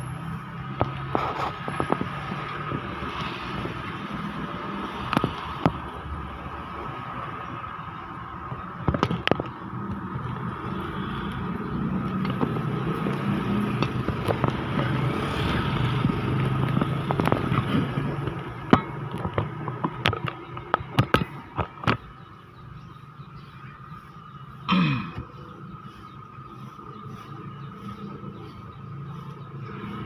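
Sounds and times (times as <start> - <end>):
vehicle engine running: 0.0 - 30.0
sharp knocks and clicks: 8.8 - 10.5, 12.0 - 15.0, 15.8 - 22.4.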